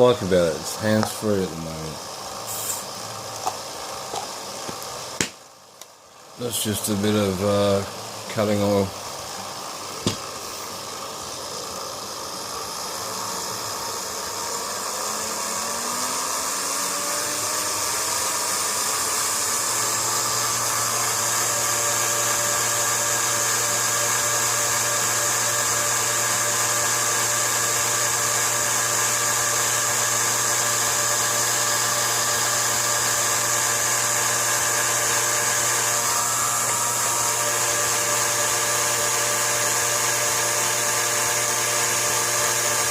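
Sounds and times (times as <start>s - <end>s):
drill motor whining: 6.5s - 42.9s.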